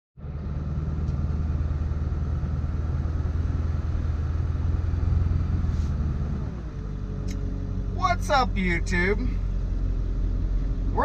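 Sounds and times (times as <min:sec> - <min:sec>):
vehicle engine and road rumble: 0:00.2 - 0:11.0.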